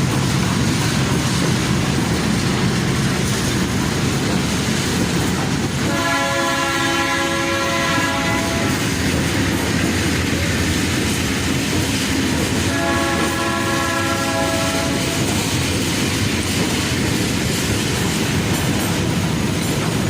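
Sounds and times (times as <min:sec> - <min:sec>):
locomotive engine rumble: 0:00.0 - 0:20.0
locomotive horn chord: 0:05.8 - 0:08.8, 0:12.7 - 0:15.3
wheel clatter on rails: 0:14.7 - 0:20.0.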